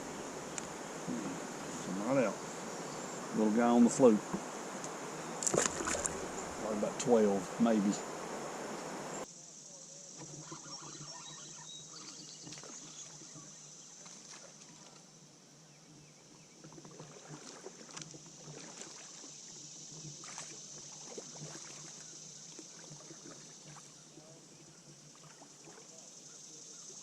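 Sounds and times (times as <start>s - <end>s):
water moving against hull: 0.0s - 9.2s, 16.6s - 25.9s
high-pitched hiss: 0.0s - 14.1s.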